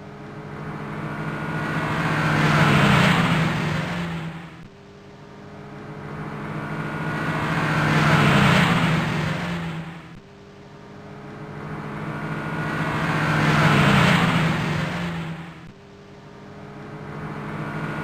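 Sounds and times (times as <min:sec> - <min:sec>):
car engine: 0:00.0 - 0:18.0
road noise: 0:00.0 - 0:18.0.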